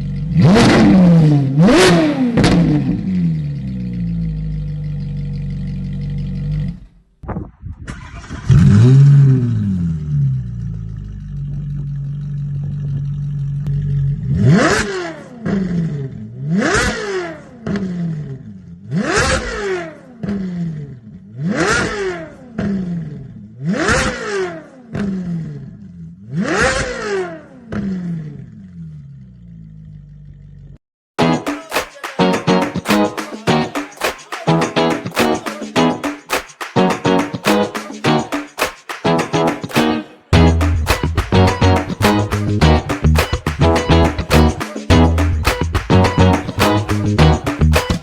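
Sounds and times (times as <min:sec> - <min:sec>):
car engine idling and revving: 0:00.0 - 0:07.0, 0:08.1 - 0:30.8.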